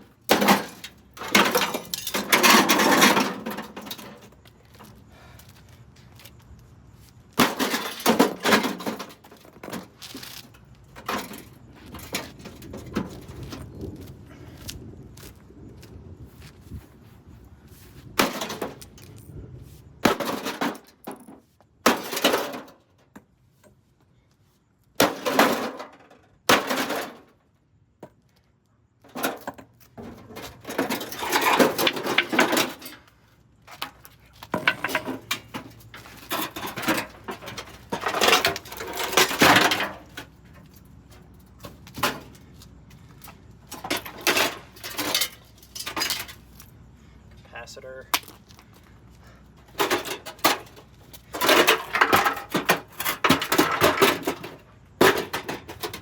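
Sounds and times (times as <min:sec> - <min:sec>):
debris rattling: 0:00.0 - 0:04.4, 0:07.4 - 0:10.0, 0:29.1 - 0:33.0, 0:33.8 - 0:42.4, 0:43.6 - 0:46.6, 0:49.7 - 0:56.0
microwave oven being smashed: 0:00.2 - 0:04.3, 0:07.4 - 0:09.9, 0:18.2 - 0:18.8, 0:20.0 - 0:21.1, 0:21.8 - 0:22.8, 0:25.0 - 0:27.3, 0:29.1 - 0:32.9, 0:34.6 - 0:40.3, 0:43.7 - 0:46.4, 0:49.8 - 0:56.0.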